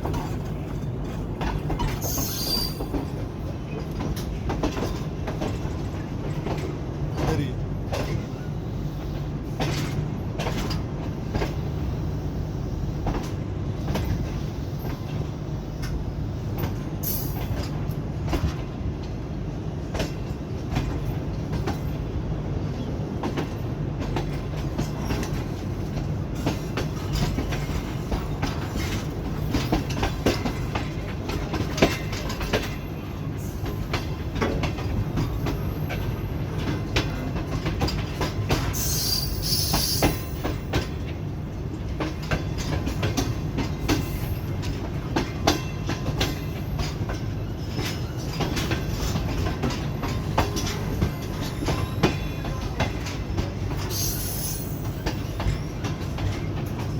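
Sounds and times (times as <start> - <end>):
wheels clacking over rail joints: 0.0 - 8.4, 22.6 - 56.9
train coaches rumbling: 0.0 - 56.9.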